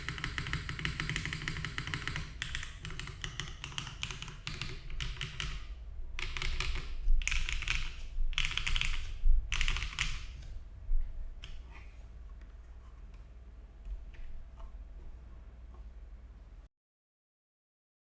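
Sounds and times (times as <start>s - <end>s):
fast typing on mechanical keyboard: 0.0s - 10.6s.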